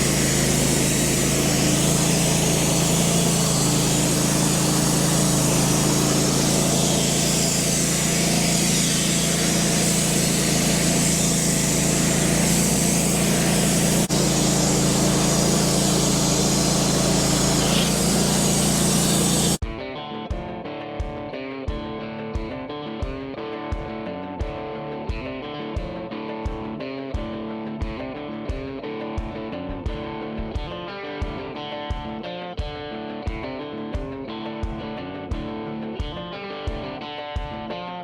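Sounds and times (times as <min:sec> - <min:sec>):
band sawmill sawing log: 0:00.0 - 0:19.6.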